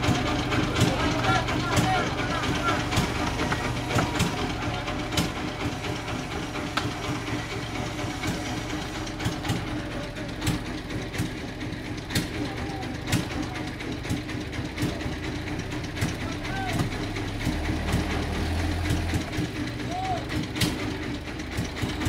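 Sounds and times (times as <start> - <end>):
clacks and knocks: 0.0 - 19.6
sawmill machinery droning: 0.0 - 22.0.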